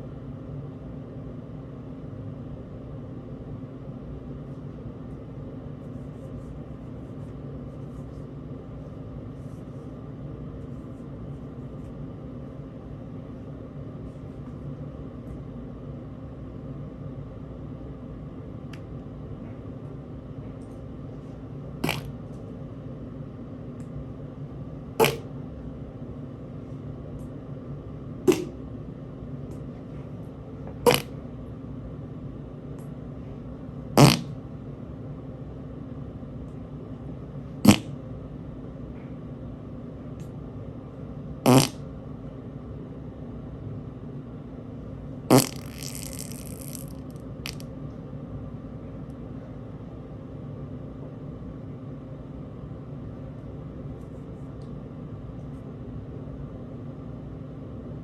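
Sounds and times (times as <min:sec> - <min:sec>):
person farting: 0:21.8 - 0:22.1, 0:25.0 - 0:25.3, 0:28.3 - 0:28.6, 0:30.8 - 0:31.2, 0:34.0 - 0:34.4, 0:37.7 - 0:37.9, 0:41.5 - 0:41.8, 0:45.3 - 0:47.6.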